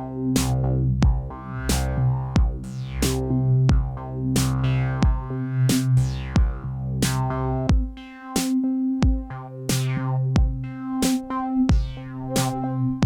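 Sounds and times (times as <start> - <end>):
held synth chords: 0.0 - 13.0
synth bass: 0.0 - 13.0
deep kick drum: 0.4 - 2.8, 3.6 - 5.4, 6.4 - 8.0, 9.0 - 9.4, 10.4 - 10.7, 11.7 - 12.0.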